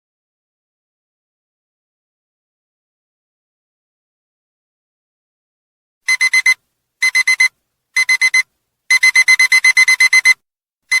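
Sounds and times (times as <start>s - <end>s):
alarm clock beeping: 6.1s - 11.0s.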